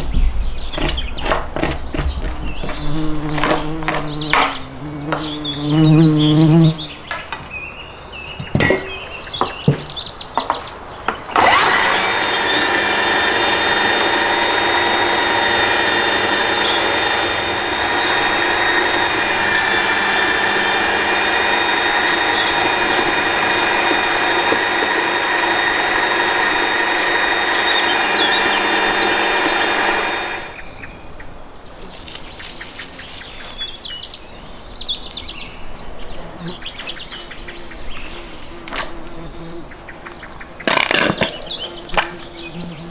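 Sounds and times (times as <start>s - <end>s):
small electric motor running: 11.2s - 30.6s.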